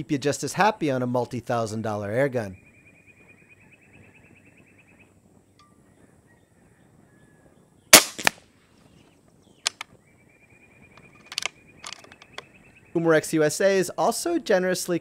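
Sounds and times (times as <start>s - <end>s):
air rifle shot: 8.0s - 8.4s
quiet clicks: 9.6s - 9.9s, 10.9s - 12.5s.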